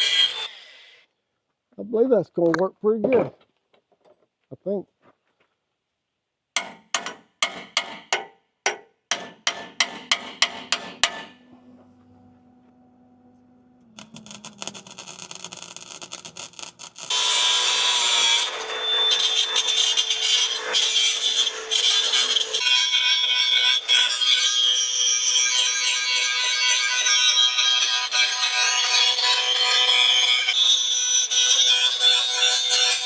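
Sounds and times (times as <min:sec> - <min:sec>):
hammer striking steel: 0:06.6 - 0:17.4.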